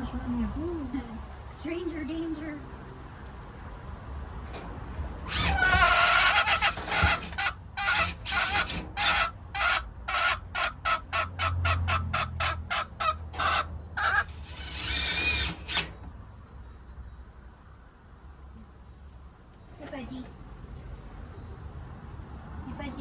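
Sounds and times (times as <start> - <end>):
hen cackling: 5.3 - 15.8.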